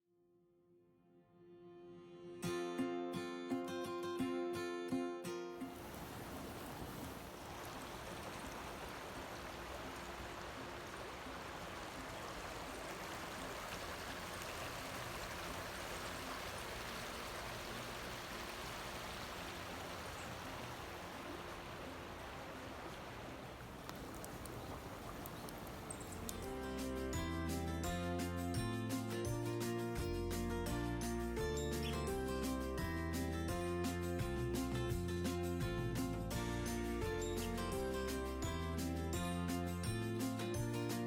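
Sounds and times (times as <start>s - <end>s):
flowing water rushing: 5.7s - 26.9s.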